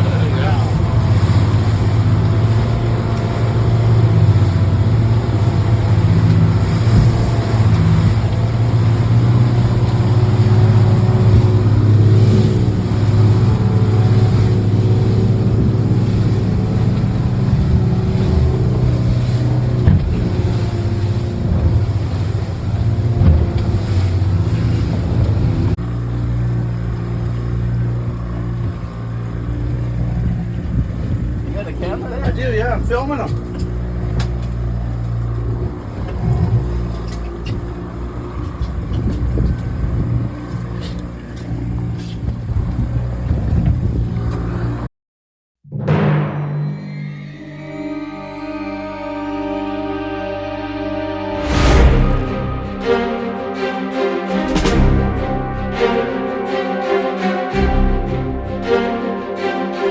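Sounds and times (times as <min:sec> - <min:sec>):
wind buffeting microphone: 0:00.0 - 0:44.4
boat engine humming: 0:00.0 - 0:44.9, 0:47.4 - 0:59.9.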